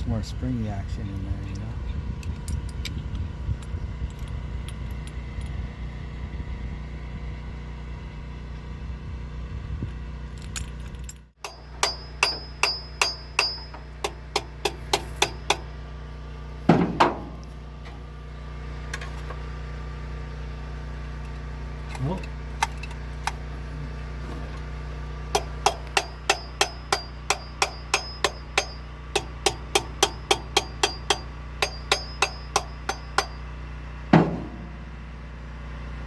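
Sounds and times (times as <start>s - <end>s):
loud knock: 16.7s - 17.4s, 34.2s - 34.9s
steady low hum: 20.0s - 36.0s
sharp metallic clicks and taps: 25.4s - 33.4s.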